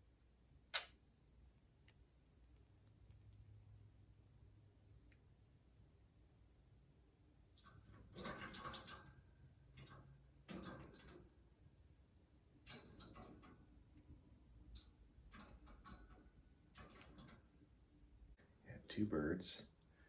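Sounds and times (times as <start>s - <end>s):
faint clicking and rustling: 1.8s - 3.9s, 7.5s - 18.4s.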